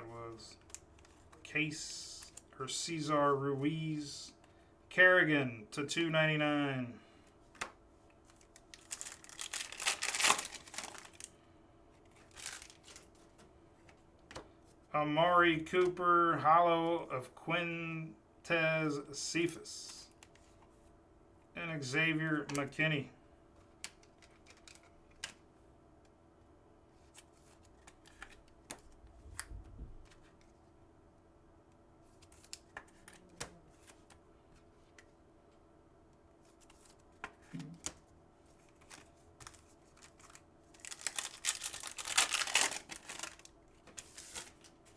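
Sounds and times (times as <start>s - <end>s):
wrapper tearing and crinkling: 8.4s - 11.3s, 12.2s - 13.1s, 38.8s - 44.7s.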